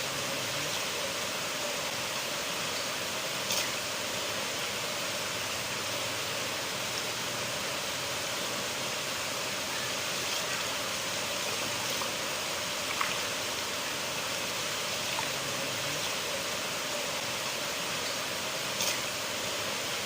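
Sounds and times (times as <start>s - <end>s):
river water rushing: 0.0s - 20.0s
water splash: 11.3s - 13.6s.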